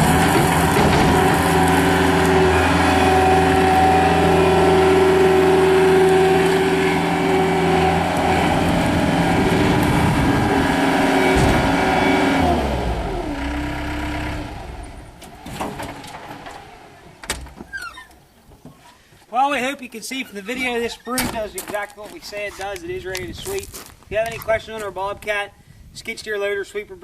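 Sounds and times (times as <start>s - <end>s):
diesel engine running: 0.0s - 17.3s.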